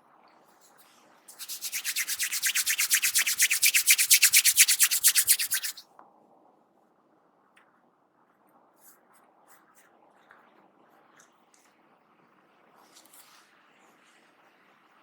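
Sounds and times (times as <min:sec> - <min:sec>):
hands rubbing hair: 0:01.3 - 0:05.8.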